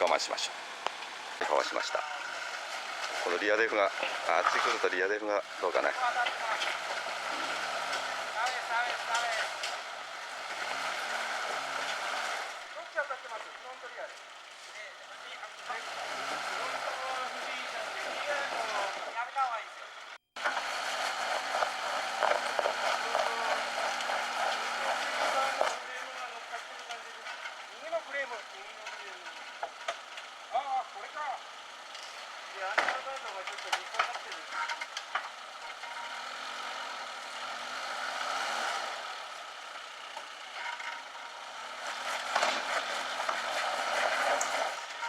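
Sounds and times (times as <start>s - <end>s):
car engine working under load: 0.0s - 45.0s
rain pattering: 20.4s - 25.8s.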